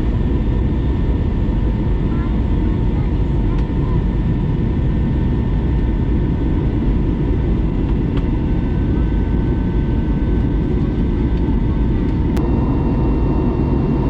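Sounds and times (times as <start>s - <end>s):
low rumble of engines and airflow: 0.0s - 14.0s
faint steady whine tones: 11.2s - 14.0s.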